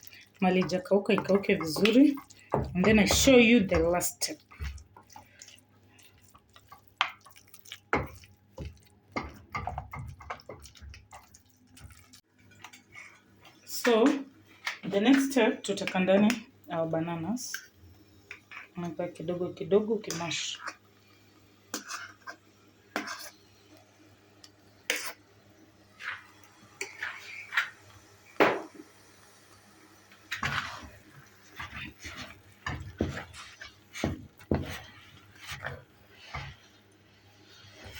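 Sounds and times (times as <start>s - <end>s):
utensil scraping cooking pot: 0.0s - 13.6s, 19.9s - 20.8s, 21.7s - 23.4s, 24.9s - 25.2s, 26.0s - 27.8s, 30.3s - 37.9s.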